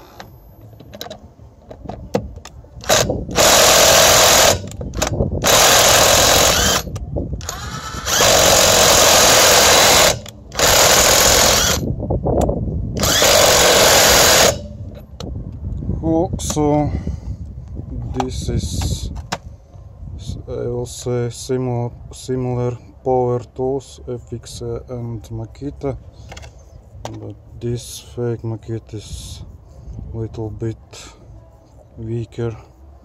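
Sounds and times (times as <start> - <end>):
impact wrench hammering: 13.0 - 14.7.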